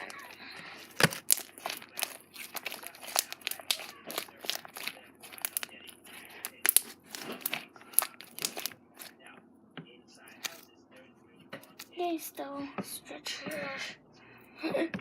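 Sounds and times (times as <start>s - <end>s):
slime squished by hand: 0.0s - 9.1s.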